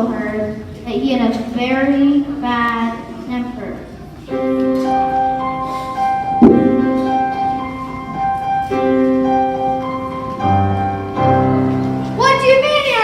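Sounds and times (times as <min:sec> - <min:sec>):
piano chords: 0:04.2 - 0:13.0.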